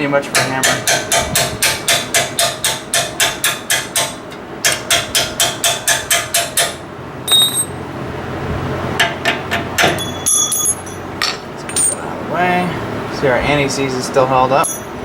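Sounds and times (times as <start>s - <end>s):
hammer tapping on metal: 0.3s - 7.7s
ringing metallic clink: 7.3s - 7.8s, 9.9s - 12.0s, 14.6s - 15.0s.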